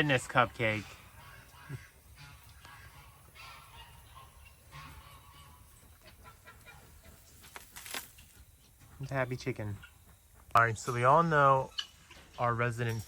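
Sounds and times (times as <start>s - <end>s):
soft hen calls: 0.0s - 7.4s
dry dirt rustling: 0.0s - 13.0s.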